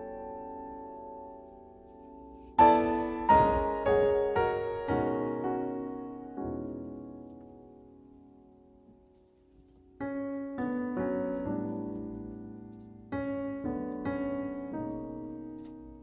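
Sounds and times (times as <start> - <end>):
soft solo piano music: 0.0 - 16.0.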